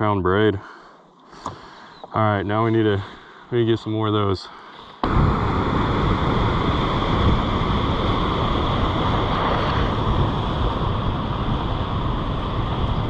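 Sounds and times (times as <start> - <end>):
water rushing over waterfall: 5.0 - 12.9
wind buffeting microphone: 5.0 - 13.0.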